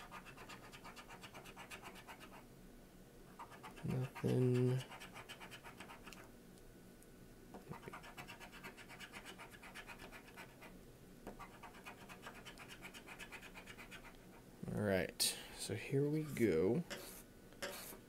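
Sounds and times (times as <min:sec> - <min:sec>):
scratching lottery ticket coating: 0:03.5 - 0:06.1.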